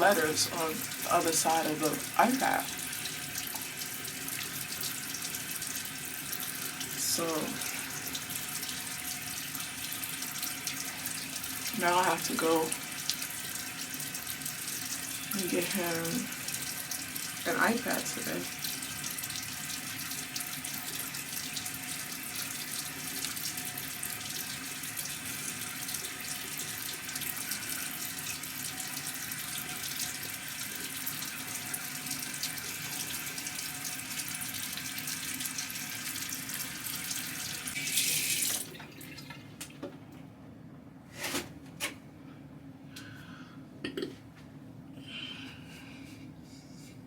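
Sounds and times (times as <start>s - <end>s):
tap water running into sink: 0.0s - 40.0s.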